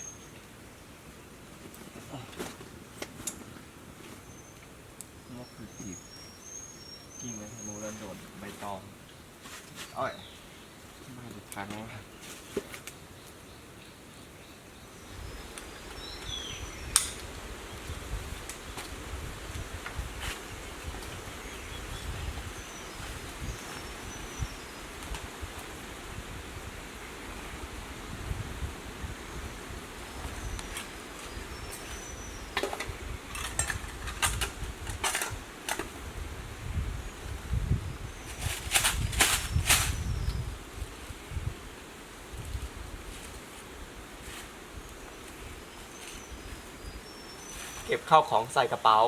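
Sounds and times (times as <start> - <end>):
rustling and crinkling: 1.5 - 4.6, 9.4 - 10.0, 11.1 - 13.0, 38.1 - 40.5, 42.4 - 48.1
wind rumbling on microphone: 14.9 - 47.9
sharp click: 16.9 - 17.3.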